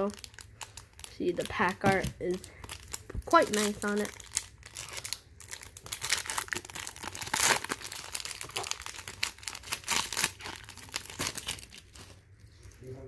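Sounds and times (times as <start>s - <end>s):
plastic wrapper crinkling and tearing: 0.0s - 13.0s.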